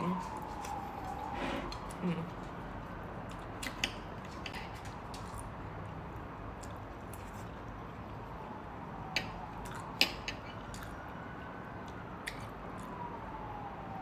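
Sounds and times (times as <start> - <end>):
faint siren wailing: 0.0 - 14.0
quiet chewing: 0.1 - 8.2, 9.2 - 11.1, 11.8 - 13.0.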